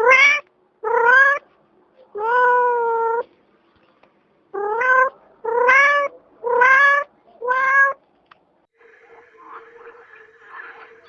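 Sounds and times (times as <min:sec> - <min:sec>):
cat meowing: 0:00.0 - 0:01.4, 0:02.1 - 0:03.2, 0:04.6 - 0:08.0.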